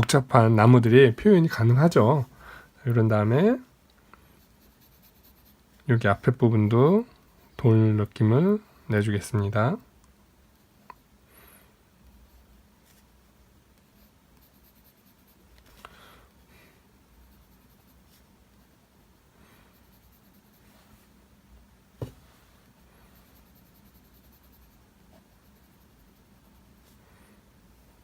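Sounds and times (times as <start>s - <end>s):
pencil scratching on paper: 4.3s - 5.8s, 13.9s - 15.5s, 17.2s - 18.8s, 19.7s - 20.7s, 23.0s - 27.0s.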